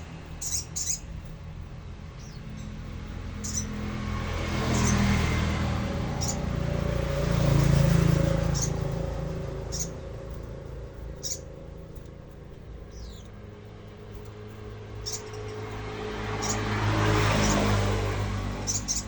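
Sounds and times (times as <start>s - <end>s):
bird high chirps: 0.2s - 1.4s, 2.1s - 3.9s, 4.6s - 5.4s, 6.0s - 14.3s, 15.0s - 16.7s, 18.6s - 19.0s
low rumble: 5.6s - 15.0s.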